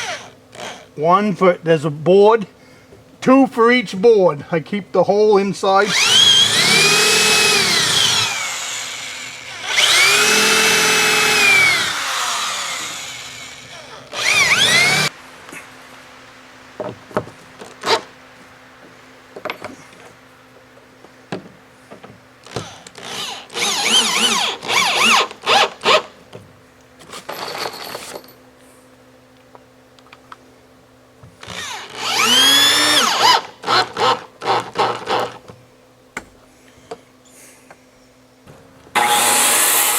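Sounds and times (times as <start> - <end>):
power drill driving screws: 0.0 - 0.8, 5.9 - 15.1, 22.5 - 26.0, 31.4 - 35.4, 39.0 - 39.9.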